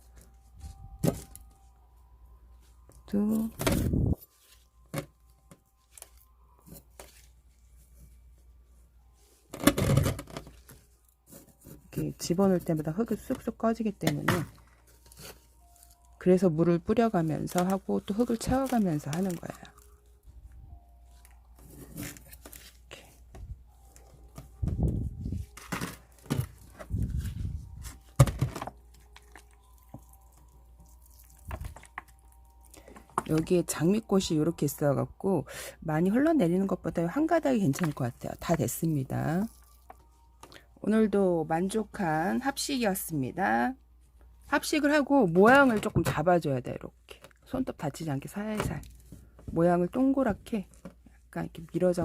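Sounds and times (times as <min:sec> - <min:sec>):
rustling of plants and soil: 0:23.8 - 0:28.1.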